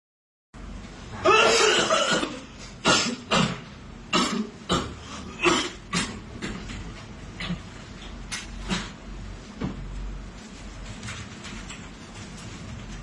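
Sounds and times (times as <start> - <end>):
person coughing: 1.2 - 6.2.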